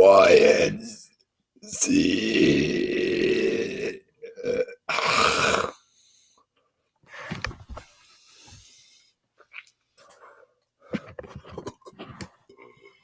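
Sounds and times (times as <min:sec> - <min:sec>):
man belching: 0:00.0 - 0:05.8.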